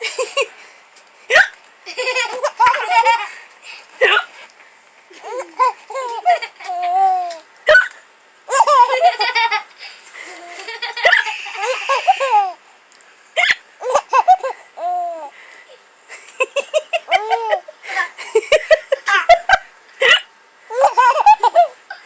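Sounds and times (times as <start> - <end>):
baby laughing: 1.3 - 3.4, 4.0 - 4.3, 5.1 - 12.6, 13.4 - 15.4, 16.2 - 22.0.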